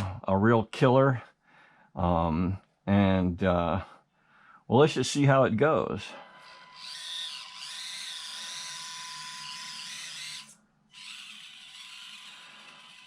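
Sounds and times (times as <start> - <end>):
small electric motor whining: 6.2 - 13.0.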